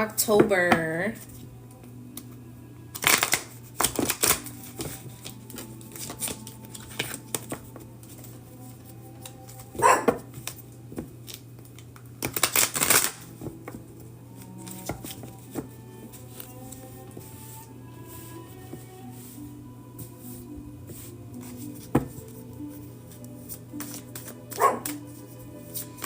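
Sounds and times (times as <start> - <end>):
faint background music: 0.0 - 26.0
deck of cards shuffled: 3.0 - 8.2, 20.0 - 22.4, 23.1 - 26.0.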